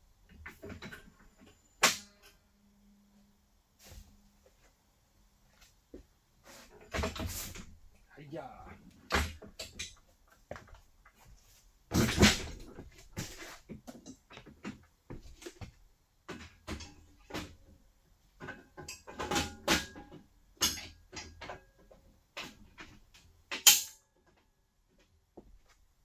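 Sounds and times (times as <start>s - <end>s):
sharp metal clank: 23.6s - 24.0s.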